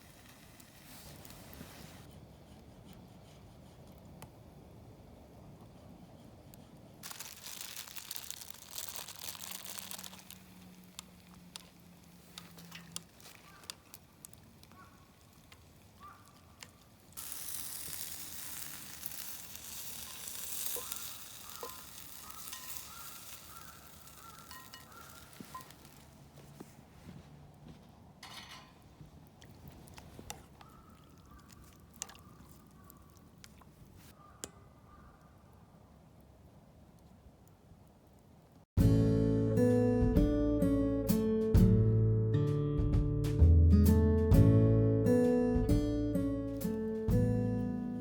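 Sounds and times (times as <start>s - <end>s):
wood fire crackling and popping: 0.0s - 2.1s, 7.0s - 34.6s.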